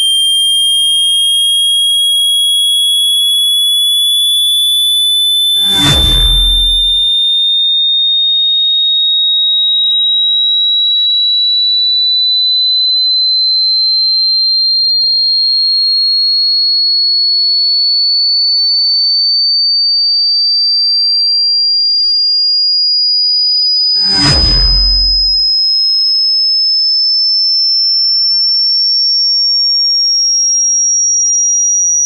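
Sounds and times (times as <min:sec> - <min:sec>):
brief low rumble: 0:05.6 - 0:07.1, 0:24.0 - 0:25.4.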